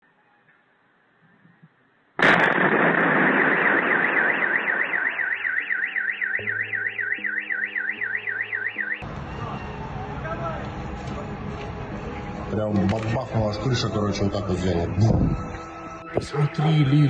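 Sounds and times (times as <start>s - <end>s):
loud explosion rumbling: 2.2s - 5.1s
car alarm warbling: 3.3s - 9.8s.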